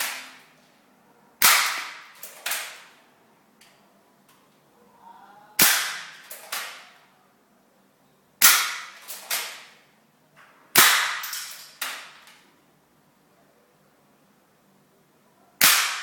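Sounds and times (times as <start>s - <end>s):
airsoft gun shots: 0.0s - 0.4s, 1.4s - 2.9s, 5.6s - 7.0s, 8.4s - 9.8s, 10.8s - 12.2s, 15.6s - 16.0s.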